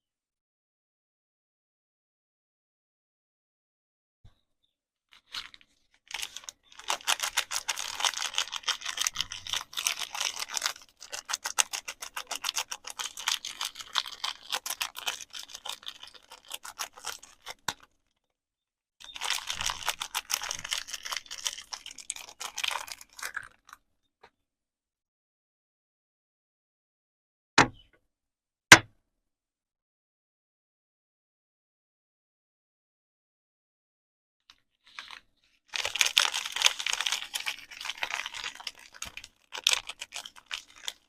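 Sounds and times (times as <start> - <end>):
plastic packaging crinkling: 5.1 - 18.0, 19.0 - 23.8, 34.9 - 41.0.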